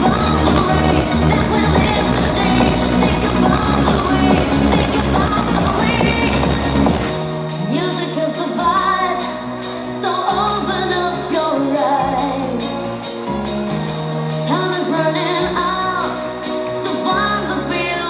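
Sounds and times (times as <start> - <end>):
held bass notes: 0.0 - 7.2
steady beat: 0.0 - 8.8
pop music: 0.0 - 18.0
woman singing: 0.0 - 18.0.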